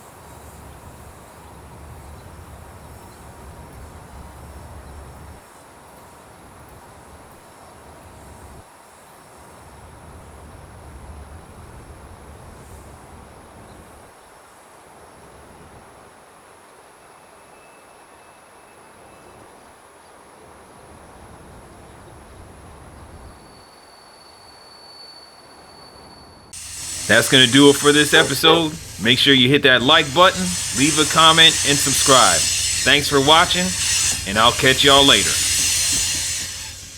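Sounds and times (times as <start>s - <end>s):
freight train rumbling past: 26.6s - 36.9s
high-pitched insect drone: 26.6s - 36.9s.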